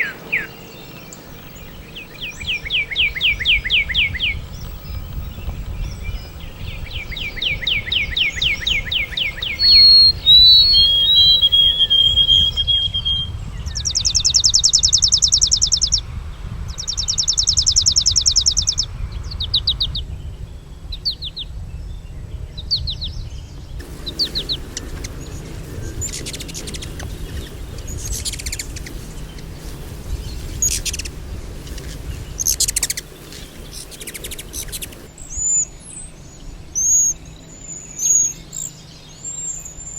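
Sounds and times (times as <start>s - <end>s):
songbirds singing: 0.0s - 39.9s
low rumble: 23.6s - 35.1s.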